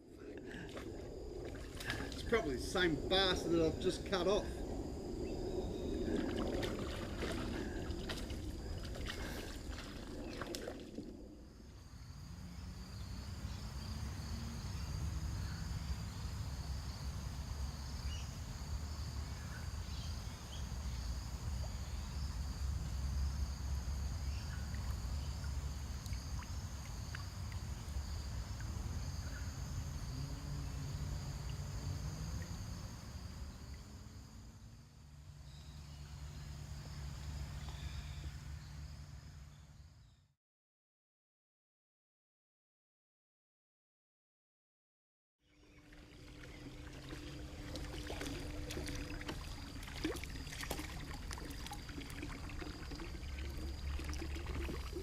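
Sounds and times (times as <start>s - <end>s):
low rumbling noise: 0.0s - 16.6s
insects chirring: 0.0s - 40.2s, 45.5s - 55.0s.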